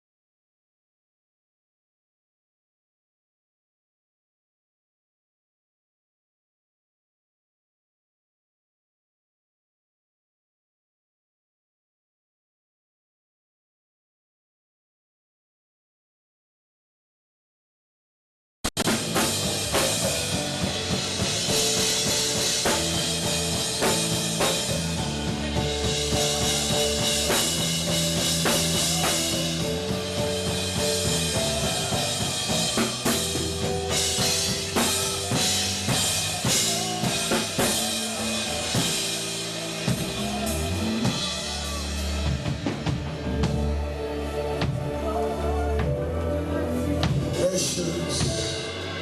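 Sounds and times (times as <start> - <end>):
live band music: 18.8 - 49.0.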